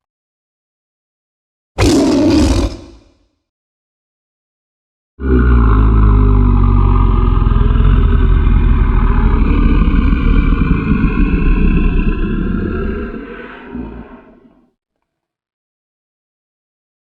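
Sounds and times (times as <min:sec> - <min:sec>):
deep rattling monster growl: 0:01.8 - 0:03.1, 0:05.2 - 0:14.6.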